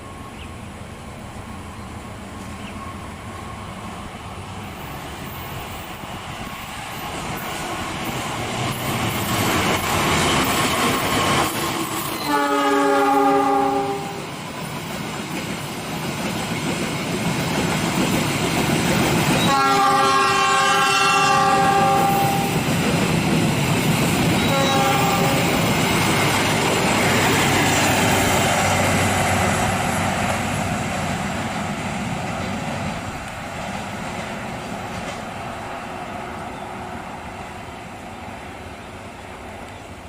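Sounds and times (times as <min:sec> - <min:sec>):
train wheels clacking on rails: 0:02.4 - 0:36.6
train horn blasts: 0:12.2 - 0:14.3, 0:19.4 - 0:22.6, 0:24.3 - 0:25.7.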